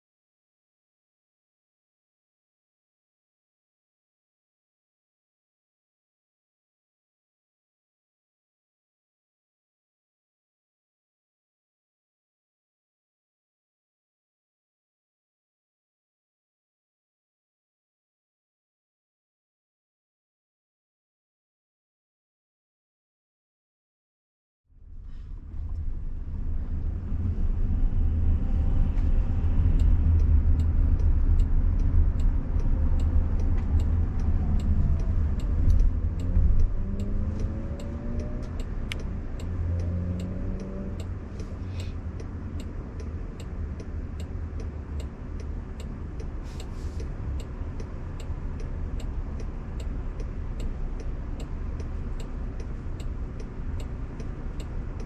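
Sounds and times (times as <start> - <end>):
road and tyre rumble: 24.7 - 55.0
faint steady ticking: 28.6 - 55.0.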